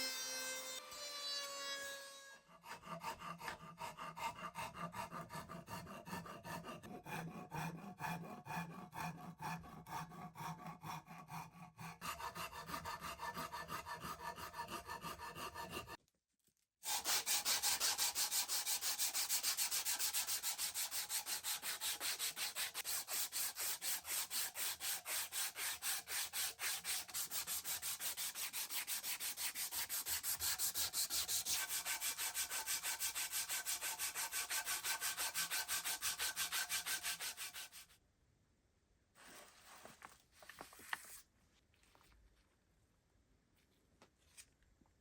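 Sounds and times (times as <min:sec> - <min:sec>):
sanding wood by hand: 0:16.9 - 0:37.9
faint handling noises: 0:39.2 - 0:42.7.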